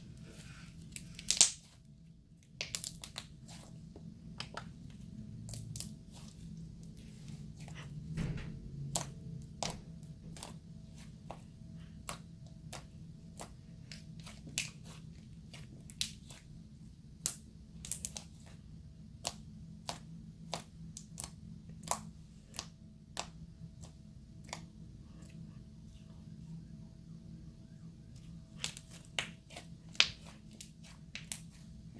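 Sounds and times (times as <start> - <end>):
steady low hum: 0.0 - 31.9
slime popping and crackling: 1.0 - 1.8, 2.4 - 3.6, 12.0 - 16.4.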